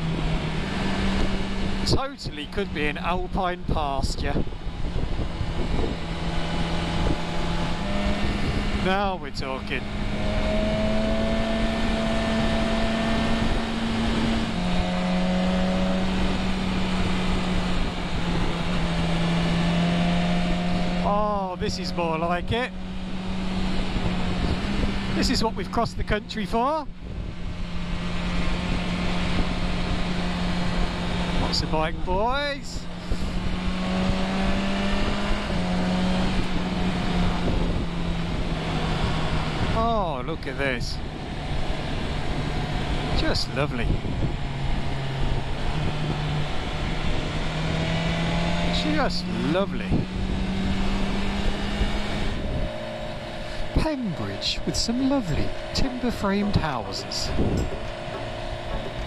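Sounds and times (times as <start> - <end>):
loud wind rush: 0.0 - 25.4, 26.8 - 54.7, 56.5 - 59.0
motorcycle engine running: 0.0 - 59.0.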